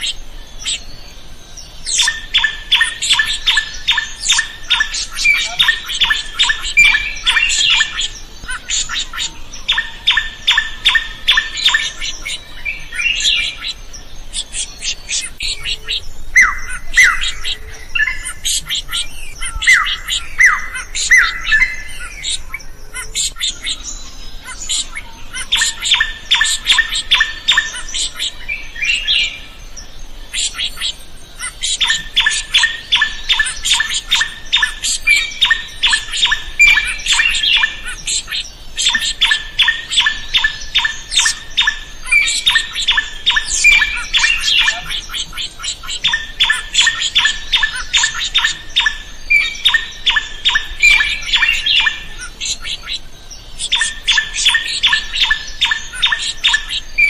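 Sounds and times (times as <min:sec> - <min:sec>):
bird sweeping calls: 0:01.6 - 0:57.0.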